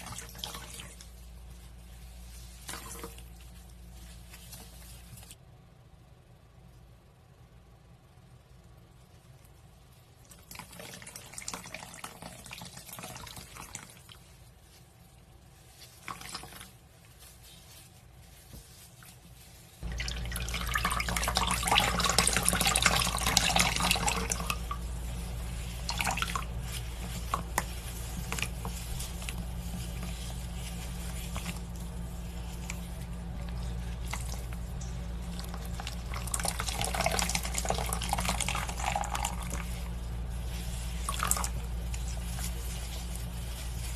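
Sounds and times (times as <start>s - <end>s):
steady low hum: 13.0s - 43.9s
wet dripping and dribbling: 15.7s - 43.9s.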